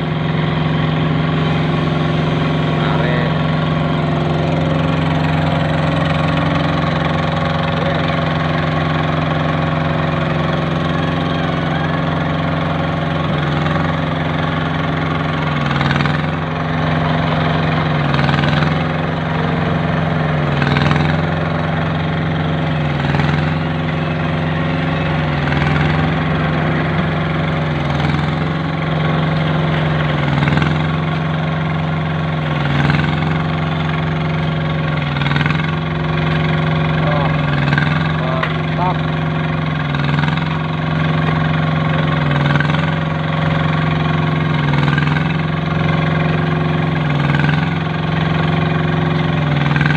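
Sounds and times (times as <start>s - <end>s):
machine engine running: 0.0s - 49.9s.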